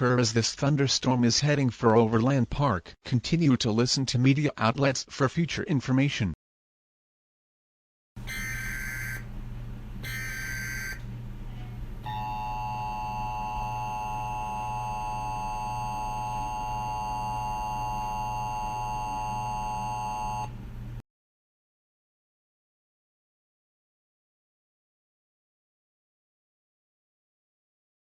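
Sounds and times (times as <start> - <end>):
digital tone bursts: 8.2 - 9.3, 10.0 - 11.0
electronic alarm tone: 8.2 - 9.3, 10.0 - 11.0, 12.0 - 20.5
low steady hum: 8.2 - 21.0.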